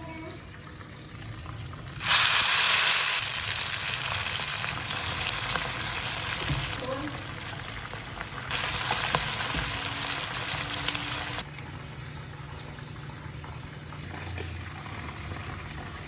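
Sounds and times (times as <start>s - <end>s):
food sizzling in hot oil: 1.7s - 11.5s.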